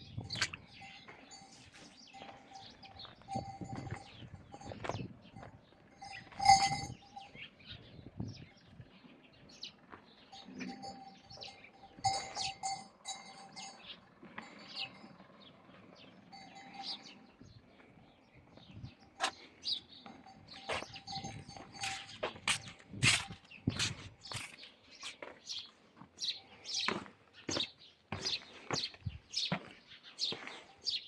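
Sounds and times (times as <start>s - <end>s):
metal livestock bells clanking: 0.0s - 8.6s, 9.5s - 24.6s
birds chirping: 0.0s - 31.0s.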